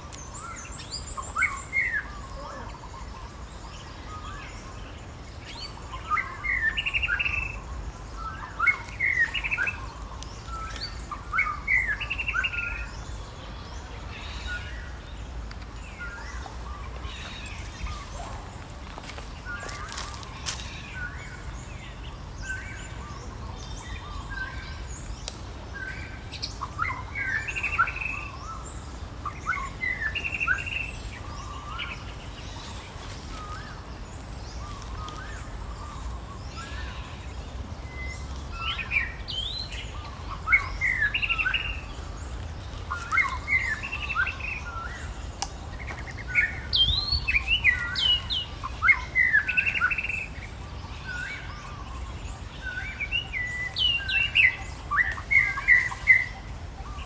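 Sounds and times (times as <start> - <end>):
birds chirping: 0.0 - 57.0.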